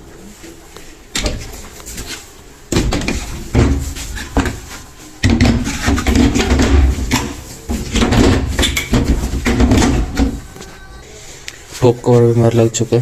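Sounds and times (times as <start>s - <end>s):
washing machine panel knocking and scraping: 2.7s - 10.5s.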